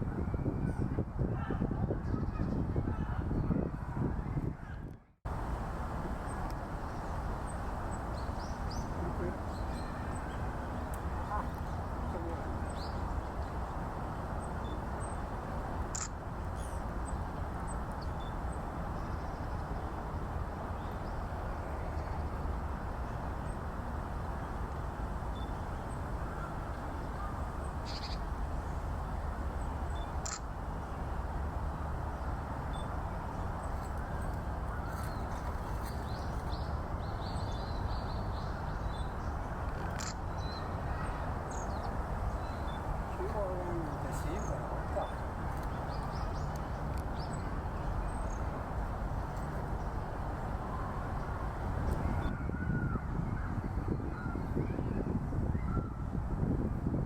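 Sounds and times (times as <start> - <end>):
bird calls: 25.3 - 28.8.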